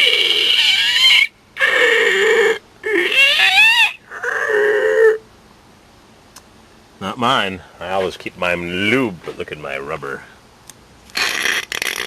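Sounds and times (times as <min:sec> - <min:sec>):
man imitating squeaky hinges: 0:00.0 - 0:05.3, 0:11.1 - 0:12.0.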